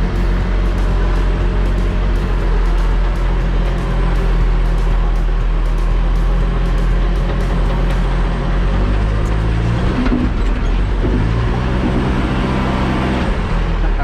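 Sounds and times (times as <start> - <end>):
backhoe diesel engine running: 0.0 - 14.0.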